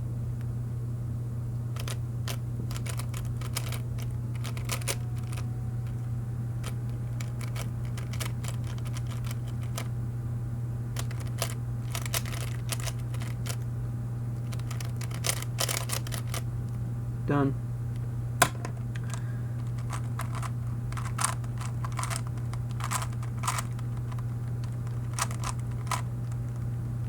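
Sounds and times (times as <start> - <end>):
steady low hum: 0.0 - 27.0
puzzle cube plastic clicks: 1.8 - 6.0, 6.6 - 9.9, 11.0 - 13.6, 14.4 - 16.4, 19.0 - 26.7.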